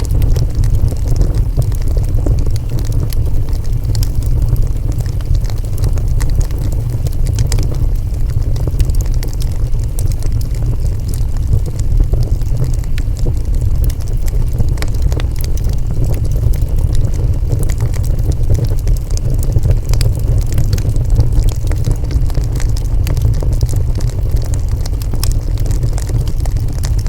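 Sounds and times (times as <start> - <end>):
burning wood crackling and popping: 0.0 - 27.0
wood fire rumbling: 0.0 - 27.0.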